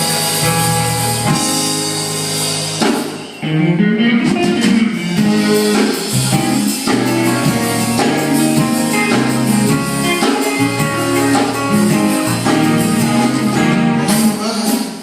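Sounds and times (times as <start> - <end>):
guitar playing: 0.0 - 14.7
steady beat: 4.3 - 14.8.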